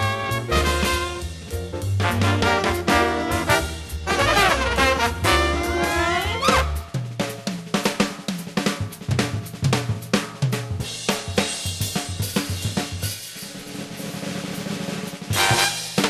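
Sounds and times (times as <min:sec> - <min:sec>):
short bass notes: 0:00.0 - 0:06.9
jazz drum kit playing: 0:00.0 - 0:16.0.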